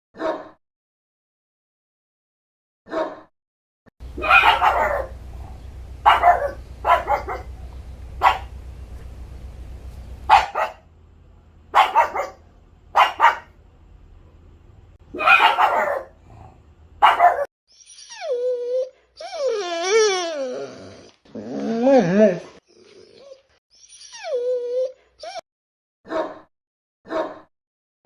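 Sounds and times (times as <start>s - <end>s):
dog barking: 0.2s - 0.6s, 2.9s - 3.3s, 4.2s - 8.6s, 10.3s - 10.9s, 11.7s - 13.6s, 15.1s - 17.5s, 26.1s - 26.5s, 27.1s - 27.5s.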